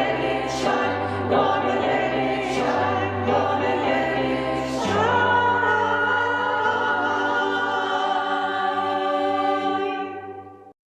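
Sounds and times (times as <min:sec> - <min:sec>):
choir singing: 0:00.0 - 0:10.8.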